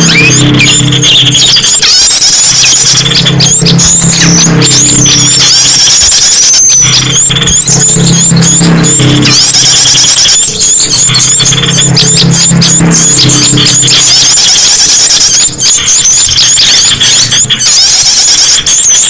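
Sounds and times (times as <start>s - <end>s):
low drone: 0.0s - 6.2s, 6.9s - 14.7s
songbirds chorus: 0.0s - 19.0s.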